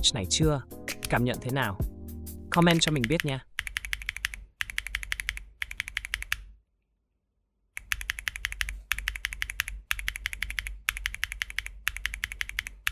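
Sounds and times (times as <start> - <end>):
mechanical keyboard typing: 2.5 - 6.5, 7.8 - 12.9.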